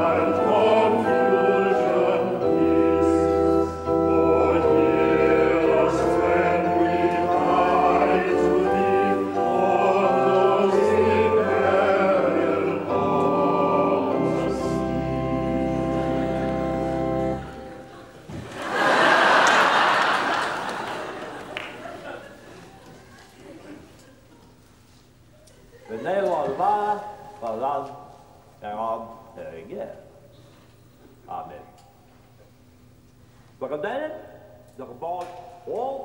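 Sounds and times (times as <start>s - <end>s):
organ bass notes: 0.0s - 18.0s
choir singing held chords: 0.0s - 21.5s.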